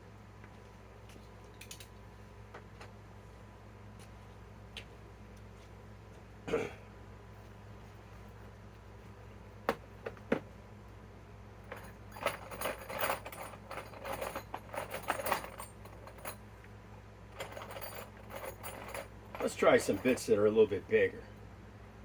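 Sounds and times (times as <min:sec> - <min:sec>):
metal tool parts jangling: 0:11.7 - 0:16.4, 0:17.4 - 0:20.3.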